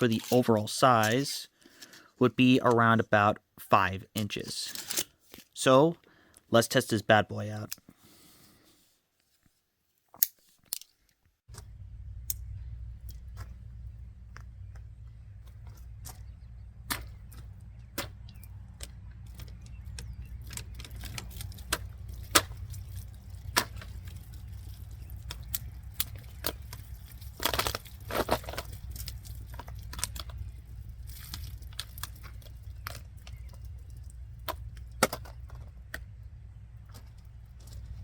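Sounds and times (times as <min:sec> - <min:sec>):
steady low hum: 0:11.5 - 0:38.0.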